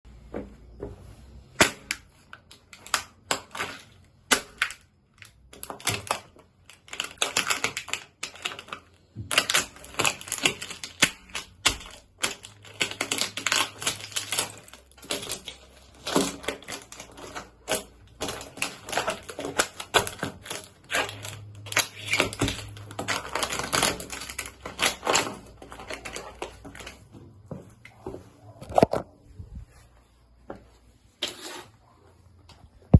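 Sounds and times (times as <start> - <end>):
plastic cracking and crunching: 1.5 - 27.9.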